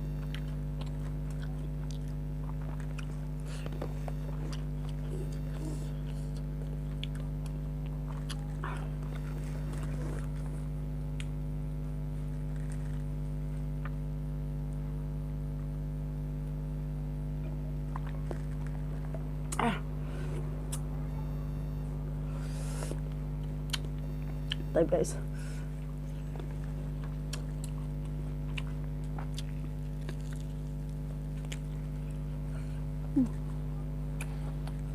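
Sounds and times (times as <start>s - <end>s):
chewing and biting food: 0.0s - 11.5s, 12.2s - 14.1s, 17.8s - 19.3s, 22.4s - 24.7s, 25.6s - 34.9s
electrical hum: 0.0s - 34.9s
mouth clicks and smacks: 22.8s - 24.7s, 27.1s - 30.5s.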